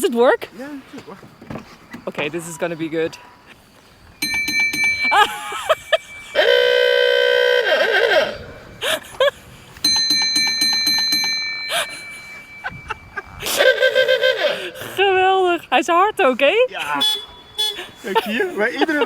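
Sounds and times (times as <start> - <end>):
car siren wailing: 4.6 - 9.4, 10.4 - 15.0.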